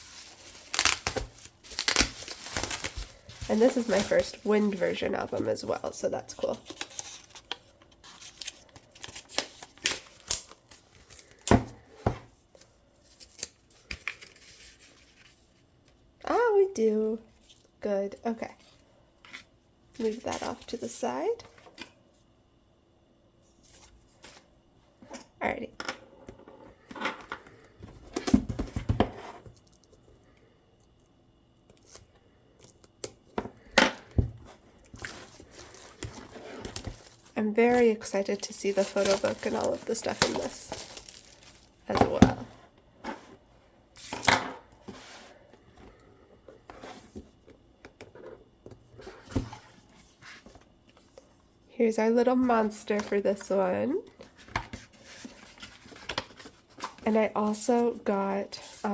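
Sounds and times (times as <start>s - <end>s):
packaging rustling: 0.0s - 11.5s, 34.5s - 42.3s
packaging snips and crackles: 0.4s - 4.4s, 38.3s - 41.7s.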